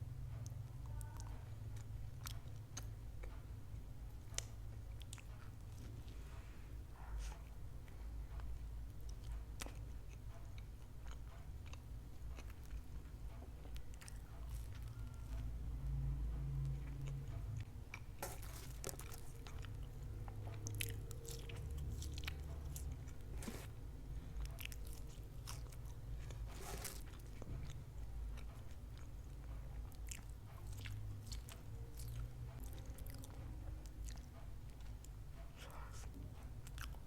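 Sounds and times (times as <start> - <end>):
soft chewing: 0.3 - 37.0.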